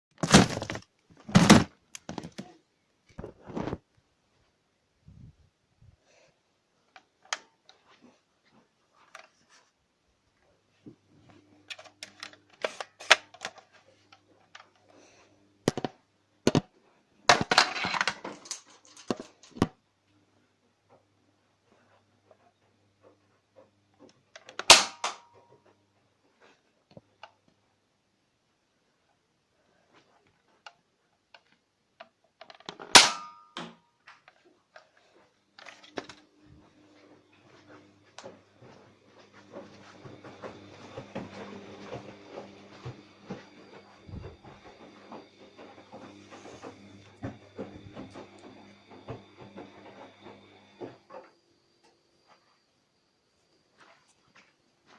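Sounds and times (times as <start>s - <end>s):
toy gun crack: 24.6s - 25.2s.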